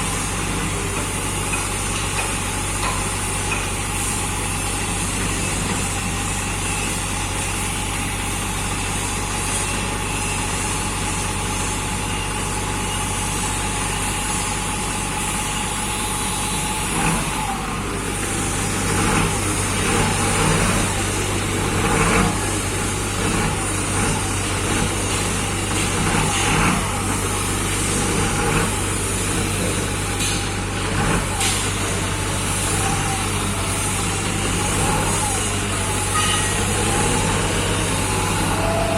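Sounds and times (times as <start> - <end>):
loader engine running: 0.0 - 38.9.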